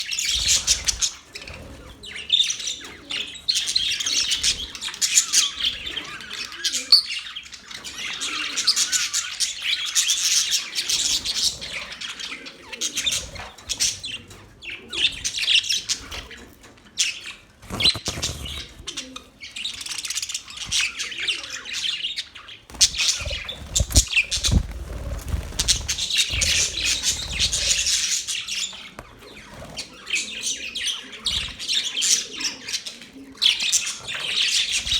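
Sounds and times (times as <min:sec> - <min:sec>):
budgerigars chirping: 0:00.0 - 0:16.4, 0:17.0 - 0:34.9
bird squawk: 0:22.7 - 0:28.8.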